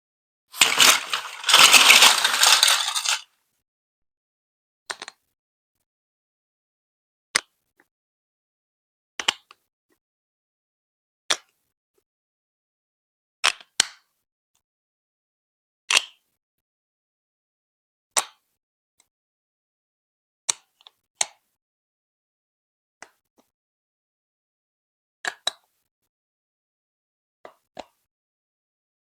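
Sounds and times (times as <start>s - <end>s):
plastic bricks clicking: 0.6s - 3.2s.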